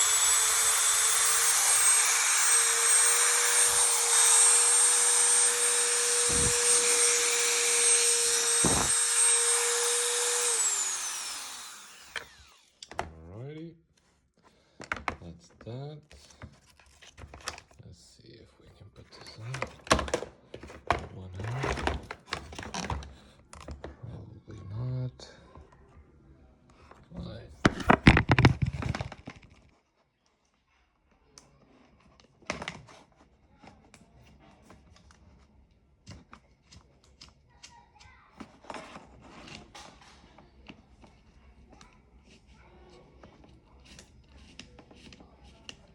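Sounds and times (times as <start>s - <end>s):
rotary tool whining: 0.0s - 12.9s
hard plastic parts clacking: 27.7s - 29.6s.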